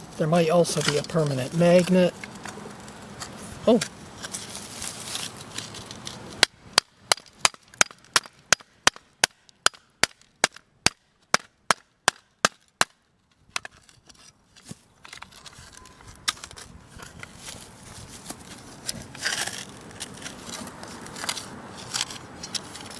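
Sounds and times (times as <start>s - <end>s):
handling noise: 0.0s - 9.3s, 13.3s - 22.9s.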